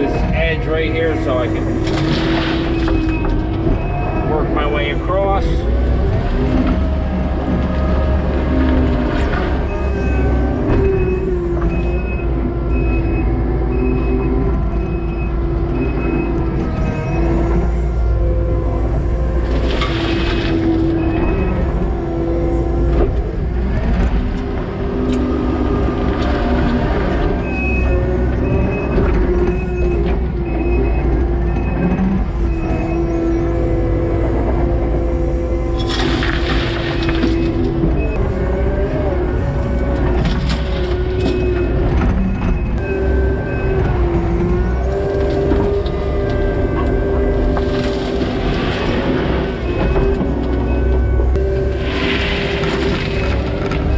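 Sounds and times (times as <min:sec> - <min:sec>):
diesel engine under load: 0:00.0 - 0:53.9
hydraulic whine: 0:00.0 - 0:53.9
backup alarm beeping: 0:49.0 - 0:52.0.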